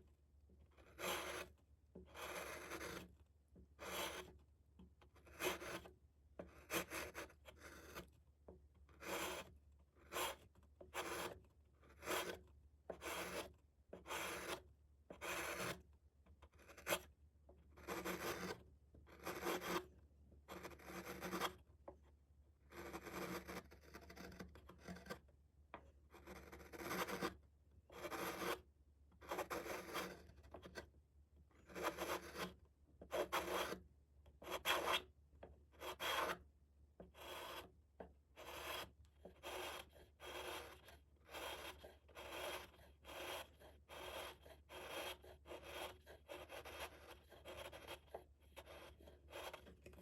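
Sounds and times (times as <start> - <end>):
blade shaving wood: 39.4 - 49.5.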